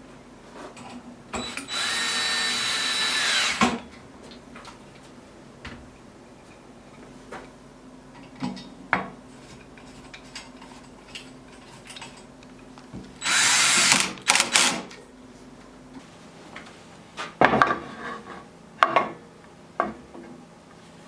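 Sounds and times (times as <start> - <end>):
power tool bursts: 1.4 - 3.8, 13.2 - 14.9.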